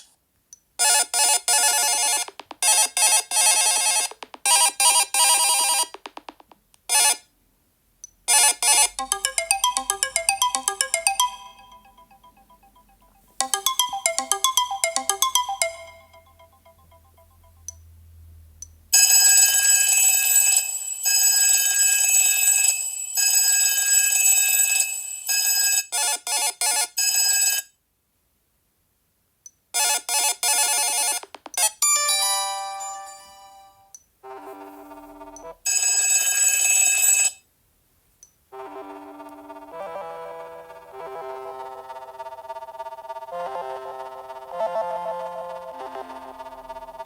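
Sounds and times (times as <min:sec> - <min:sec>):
phone alarm tones: 0:08.3 - 0:17.3.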